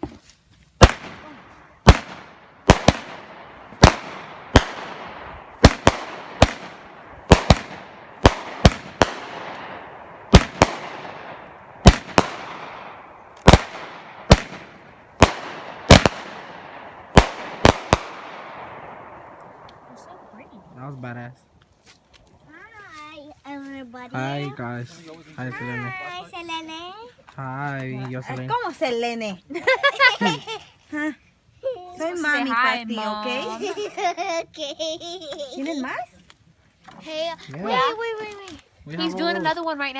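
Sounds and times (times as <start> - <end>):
fireworks bangs: 0.8 - 20.6.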